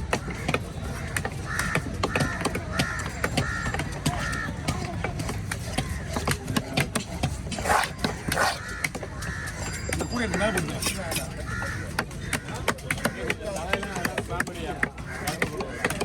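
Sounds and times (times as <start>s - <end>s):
busy market clatter: 0.0s - 16.0s
crows cawing: 0.0s - 16.0s.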